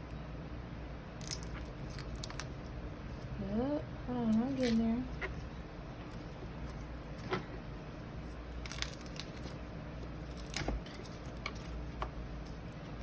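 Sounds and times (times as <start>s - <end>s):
garlic skins crackling and tearing: 1.1s - 3.3s, 4.3s - 7.3s, 8.3s - 12.7s.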